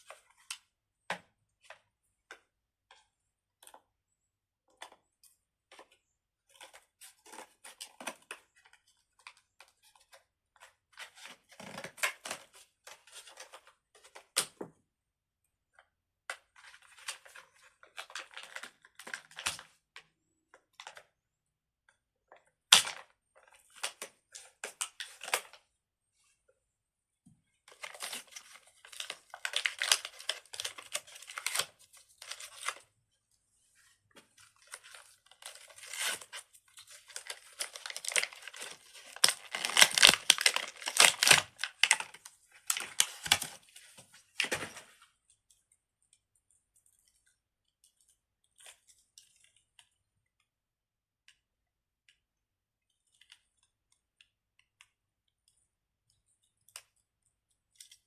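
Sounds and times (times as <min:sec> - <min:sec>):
plastic packaging tearing and crinkling: 0:27.8 - 0:32.8, 0:34.6 - 0:43.6.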